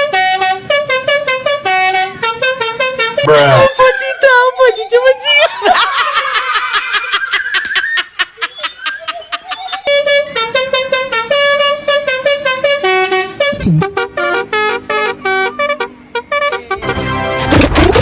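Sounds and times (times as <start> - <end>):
multi-tone bus horn tune: 0.0 - 3.9, 9.3 - 17.7.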